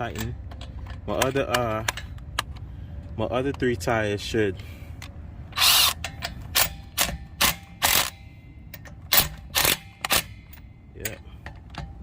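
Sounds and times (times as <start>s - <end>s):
impact wrench bursts: 5.5s - 10.6s.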